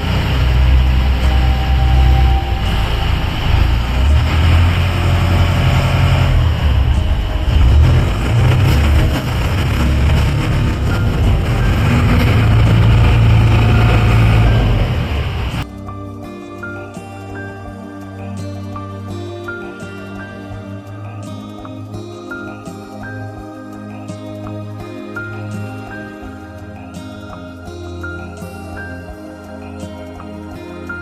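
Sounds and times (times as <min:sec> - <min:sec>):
low engine rumble: 0:00.0 - 0:15.6.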